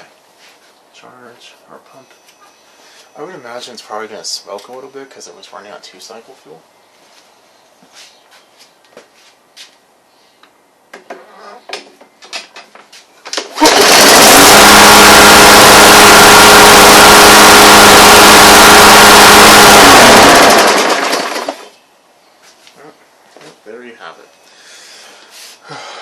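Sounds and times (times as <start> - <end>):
lawnmower engine running: 13.4 - 21.8.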